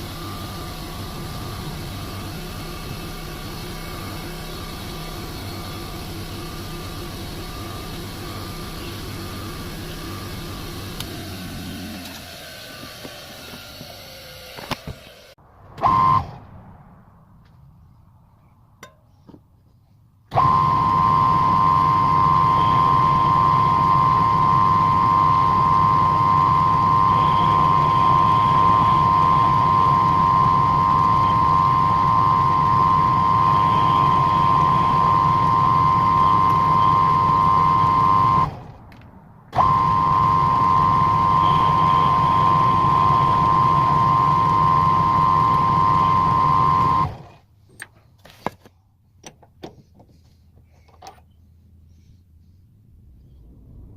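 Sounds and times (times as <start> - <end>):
electric power tool whine: 0.0 - 16.4, 20.3 - 38.8, 39.5 - 47.5.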